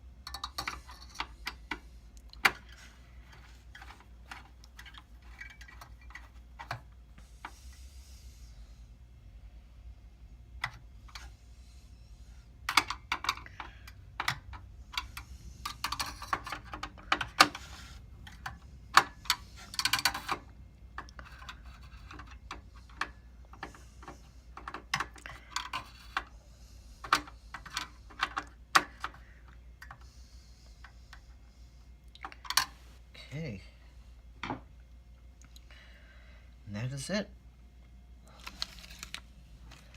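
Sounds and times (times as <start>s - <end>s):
faint low hum: 0.0s - 39.9s
clicks and scrapes of parts: 0.2s - 7.8s, 10.6s - 11.8s, 12.6s - 26.4s, 27.0s - 31.5s, 32.1s - 32.8s, 38.3s - 39.9s.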